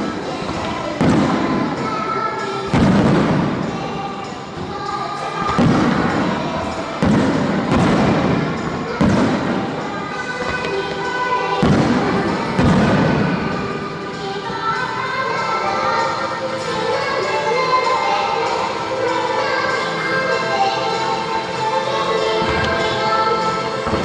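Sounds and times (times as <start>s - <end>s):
music: 0.0s - 24.0s
fireworks bursting with deep thuds: 2.7s - 3.7s, 5.5s - 6.4s, 7.0s - 9.8s, 11.6s - 13.5s.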